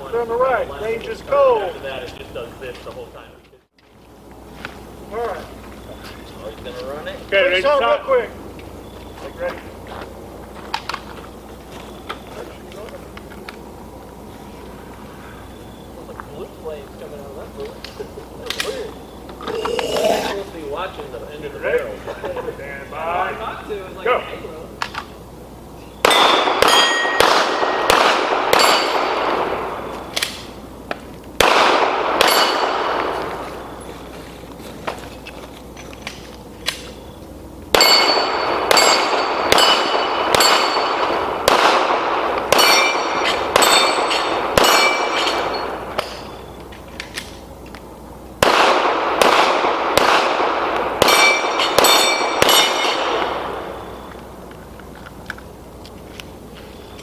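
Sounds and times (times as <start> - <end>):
pistol shots: 26.0 - 30.6, 31.4 - 33.8, 37.7 - 46.6, 48.4 - 54.2
bullets clanging on steel plates: 26.1 - 27.8, 28.5 - 29.4, 32.2 - 33.1, 37.8 - 41.3, 42.5 - 46.6, 51.0 - 53.3.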